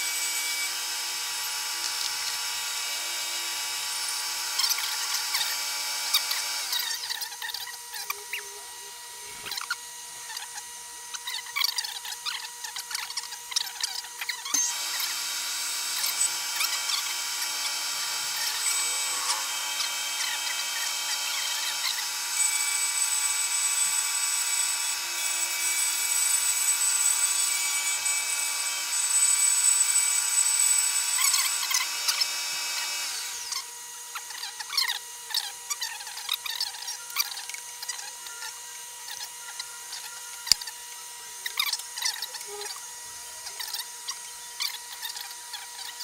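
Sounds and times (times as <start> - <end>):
milling machine motor whine: 0.0 - 46.0
hissing cut into wood: 14.5 - 33.7.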